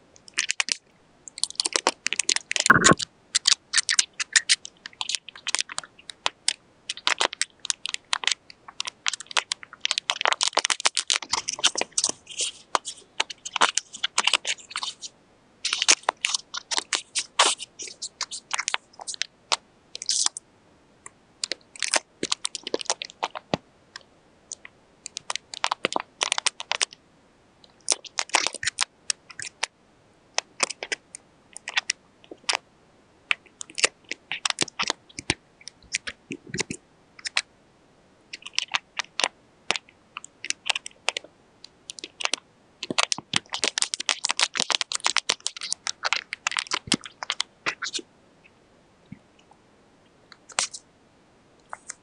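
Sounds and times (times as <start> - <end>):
paper and tape crinkling: 1.4 - 19.3, 21.4 - 23.6, 25.1 - 27.0, 41.9 - 48.0.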